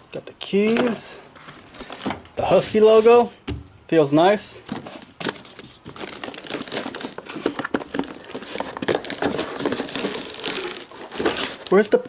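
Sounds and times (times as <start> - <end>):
packaging crinkling and rustling: 4.6 - 12.0.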